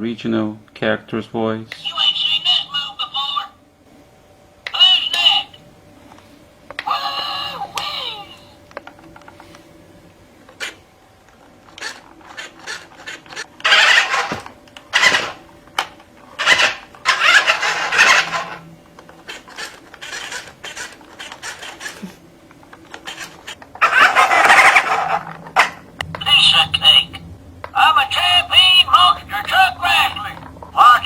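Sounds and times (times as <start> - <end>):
toy truck motor whirring: 11.7 - 15.4, 16.4 - 25.7.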